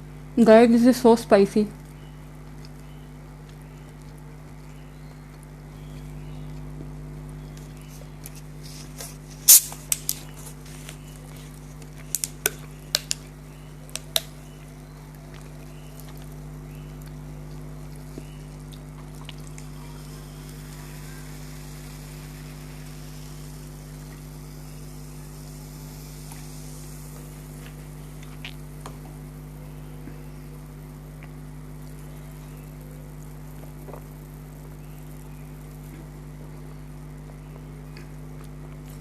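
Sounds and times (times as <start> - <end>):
low electrical hum: 0.0 - 39.0
wet mouth clicks chewing: 14.0 - 20.2.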